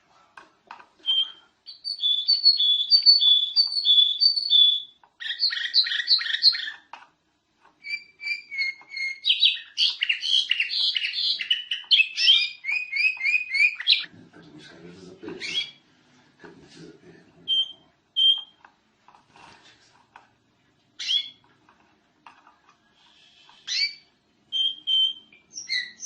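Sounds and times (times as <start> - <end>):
canary singing: 1.0 - 7.0, 7.7 - 14.1, 15.3 - 15.8, 17.5 - 18.7, 21.0 - 21.5, 23.1 - 26.0.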